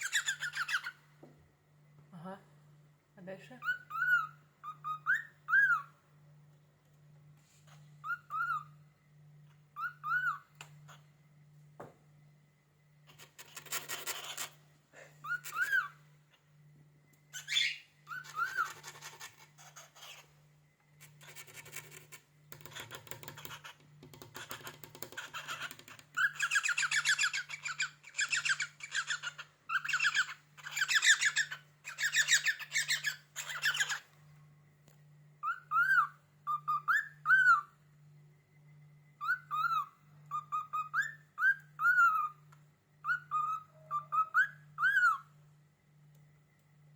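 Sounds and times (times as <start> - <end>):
cockatiel whistled notes: 9.8 - 10.5, 35.4 - 37.8, 39.2 - 42.4, 43.0 - 45.3.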